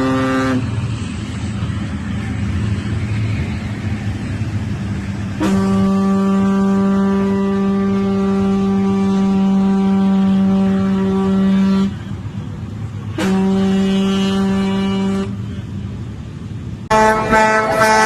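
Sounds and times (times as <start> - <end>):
ship's horn blasts: 0.0 - 0.9, 5.3 - 12.1, 13.0 - 15.7, 16.9 - 18.0.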